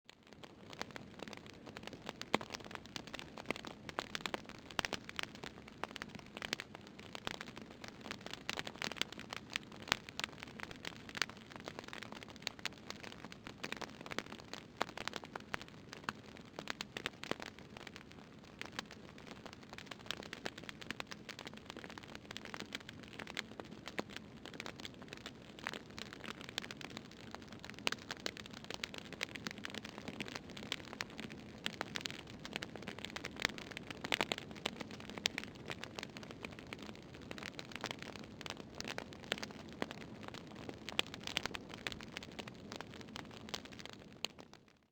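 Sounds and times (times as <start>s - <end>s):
fire crackling: 0.2s - 44.5s.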